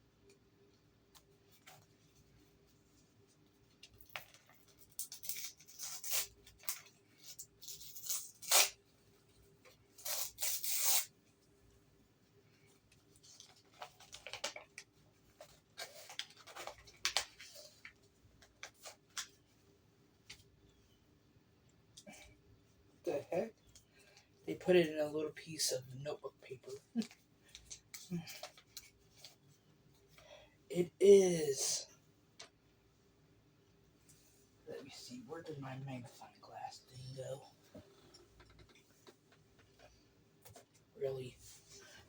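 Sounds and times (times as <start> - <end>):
paper ripping: 5.0 - 6.8, 7.7 - 8.8, 10.0 - 11.1
paper rustling and crinkling: 12.8 - 20.5.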